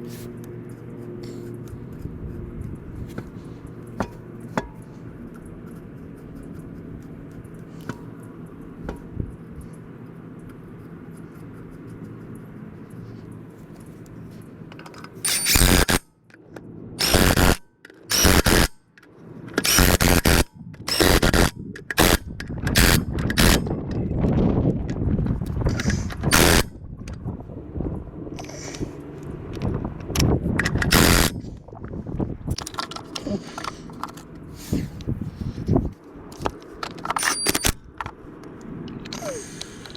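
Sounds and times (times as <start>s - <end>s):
compressed-air tool bursts: 15.3s - 16.0s, 17.0s - 18.8s, 19.6s - 22.2s, 25.8s - 26.7s, 30.8s - 31.4s.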